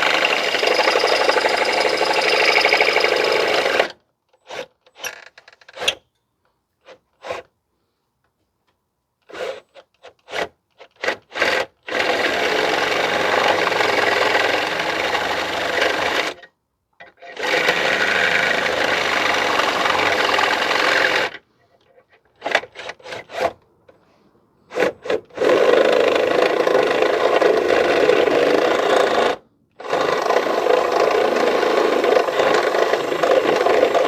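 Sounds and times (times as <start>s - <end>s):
power drill boring into metal: 0.0s - 6.0s, 11.1s - 16.5s, 17.1s - 21.4s, 24.7s - 34.0s.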